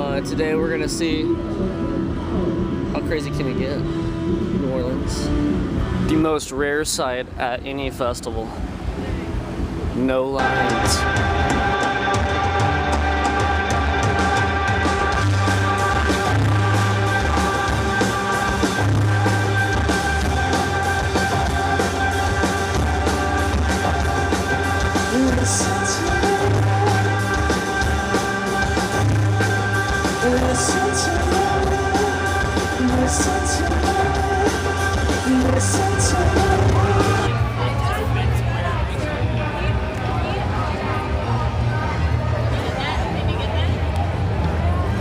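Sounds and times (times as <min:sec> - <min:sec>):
rock music: 0:00.0 - 0:06.8, 0:08.7 - 0:39.8
person singing: 0:10.4 - 0:37.4.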